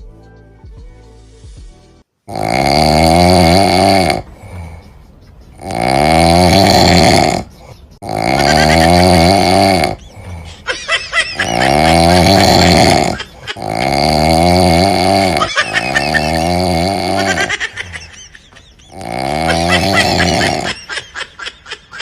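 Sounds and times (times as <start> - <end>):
woman snoring loudly: 2.3 - 4.3, 5.6 - 10.4, 11.1 - 18.0, 18.9 - 21.5.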